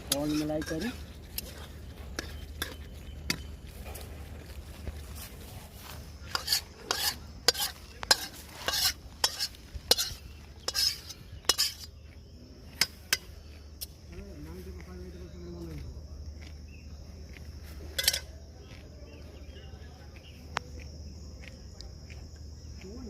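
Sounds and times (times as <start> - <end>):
metal spoon scraping a pot: 0.0 - 2.9, 6.2 - 11.9, 18.0 - 18.3.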